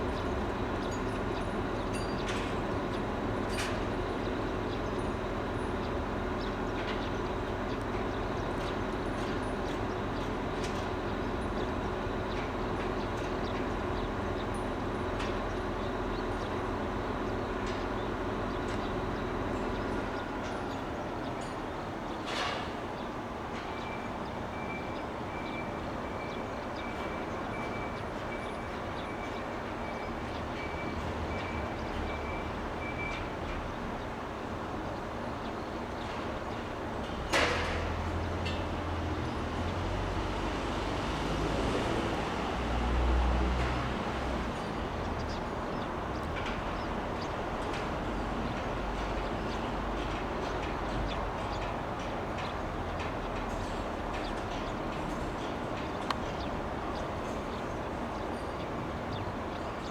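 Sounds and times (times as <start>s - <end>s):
passing vehicles rumble: 37.8s - 49.6s.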